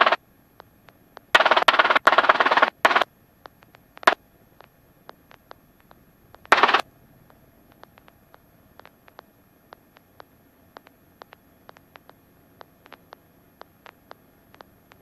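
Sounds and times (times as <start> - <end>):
crackling radio static bursts: 0.0 - 15.0
faint clicks: 0.0 - 15.0.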